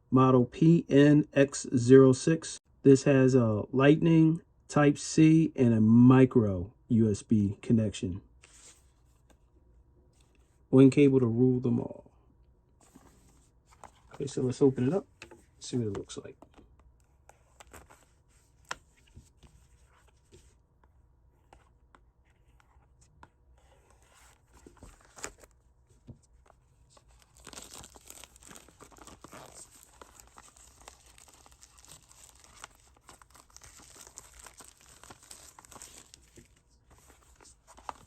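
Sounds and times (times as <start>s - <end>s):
packaging tearing and crinkling: 27.1s - 36.5s.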